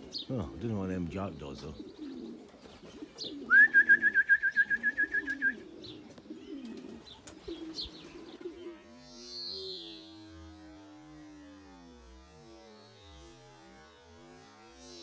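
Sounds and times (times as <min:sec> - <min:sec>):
pigeons cooing: 0:00.0 - 0:11.0.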